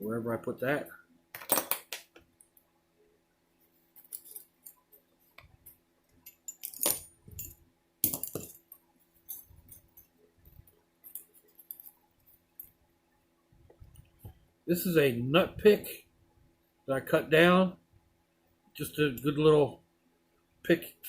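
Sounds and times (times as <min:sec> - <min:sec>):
faint steady hum: 0:00.0 - 0:21.0
metal tools clinking: 0:04.0 - 0:04.9, 0:06.1 - 0:12.0.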